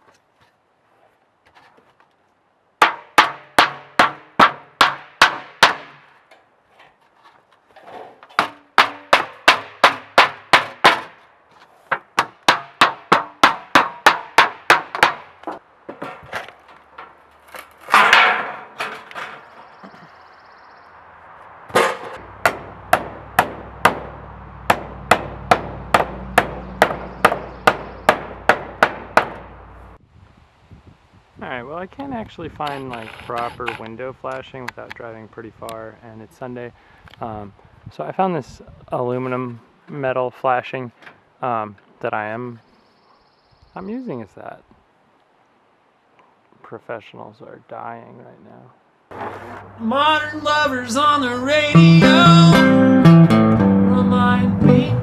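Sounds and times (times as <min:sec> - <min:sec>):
hammer driving nails: 0:02.8 - 0:06.1, 0:08.2 - 0:11.2, 0:11.9 - 0:19.3, 0:21.7 - 0:24.1, 0:24.7 - 0:29.5
rasping noise: 0:32.7 - 0:33.8.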